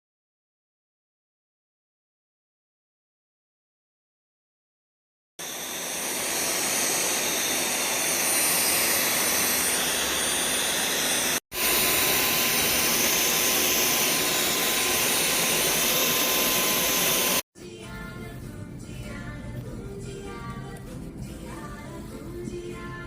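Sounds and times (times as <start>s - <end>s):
vacuum cleaner running: 5.4s - 17.4s.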